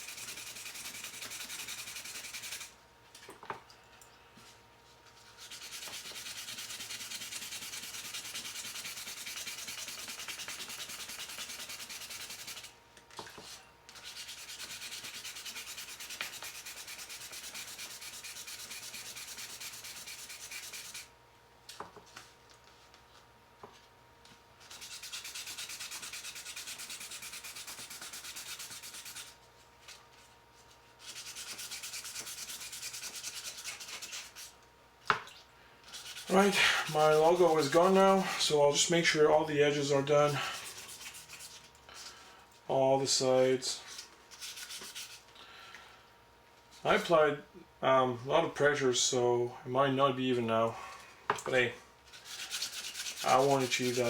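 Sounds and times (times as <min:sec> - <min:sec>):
wet sandpaper rubbing plastic: 0:00.0 - 0:02.7, 0:05.4 - 0:12.7, 0:14.0 - 0:21.1, 0:24.7 - 0:29.4, 0:31.0 - 0:34.6, 0:35.9 - 0:41.7, 0:43.9 - 0:45.2, 0:52.1 - 0:54.0.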